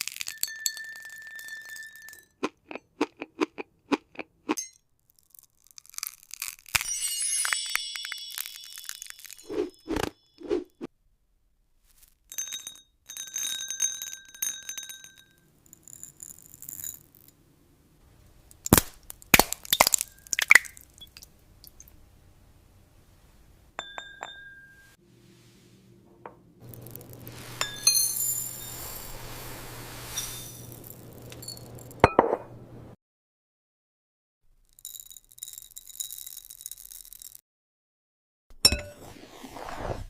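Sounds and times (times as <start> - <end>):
glass clinking and ringing: 0.1 - 2.4, 4.6 - 4.8, 6.8 - 10.3, 12.3 - 16.1, 19.8 - 21.2, 23.8 - 25.0, 27.5 - 29.2, 30.1 - 32.6, 38.6 - 39.1.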